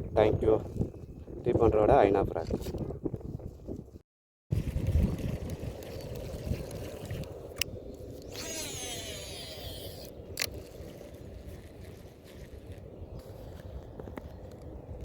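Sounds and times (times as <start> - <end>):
wind noise: 0.0 - 15.0
fishing reel spool whine: 8.2 - 10.1
fishing reel clicks: 8.2 - 10.5.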